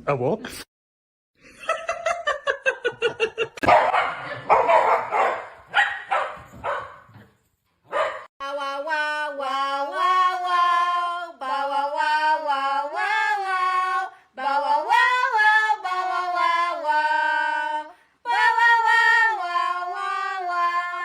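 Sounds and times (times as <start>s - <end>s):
wordless singing-like vocalising: 8.4s - 21.0s.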